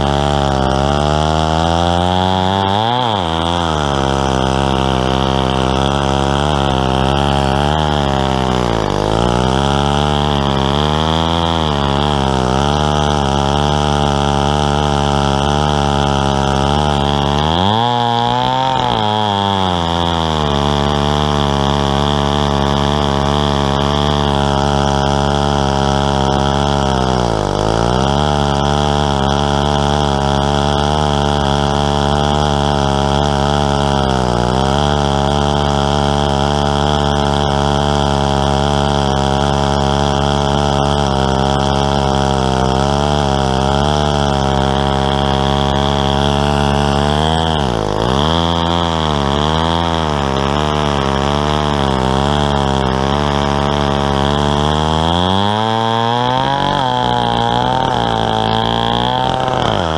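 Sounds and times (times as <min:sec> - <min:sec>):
chainsaw cutting log: 0:00.0 - 0:59.9.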